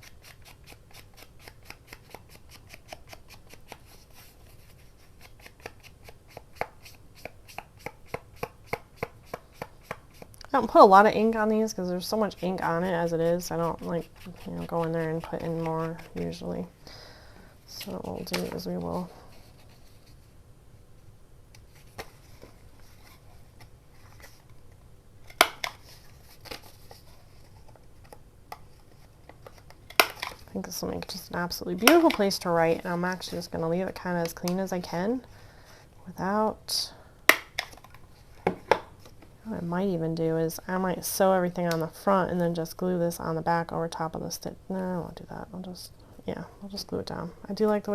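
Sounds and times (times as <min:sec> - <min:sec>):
paper and craft tools handling: 0:13.4 - 0:16.4.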